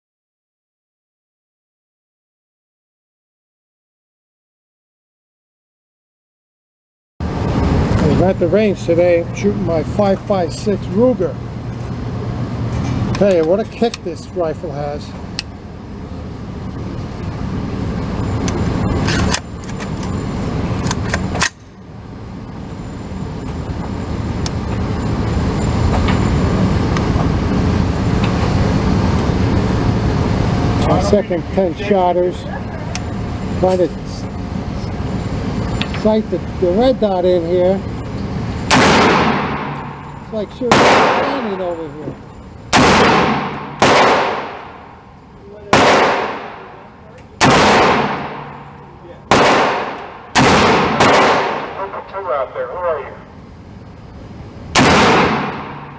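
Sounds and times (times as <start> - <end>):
steady low rumble: 7.2 - 55.9
rifle shots: 38.7 - 41.8, 42.7 - 44.9, 45.7 - 52.1, 54.7 - 55.9.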